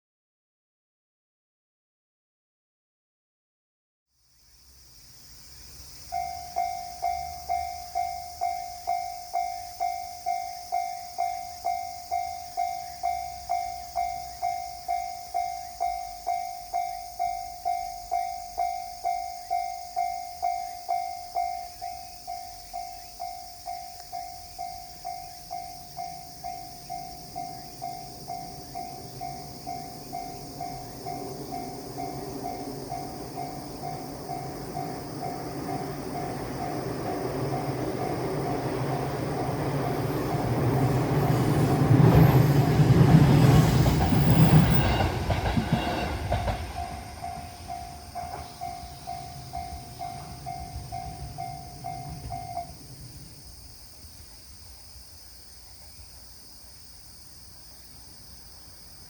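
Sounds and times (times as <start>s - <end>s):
train rumble: 4.7s - 56.9s
level-crossing warning bell: 6.0s - 53.2s.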